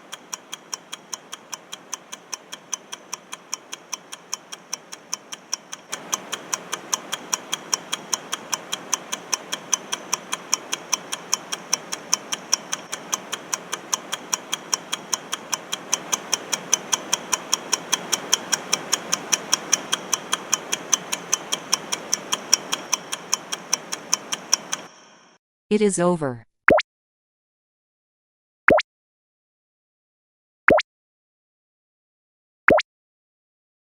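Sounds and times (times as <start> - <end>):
clock ticking: 0.0 - 25.0.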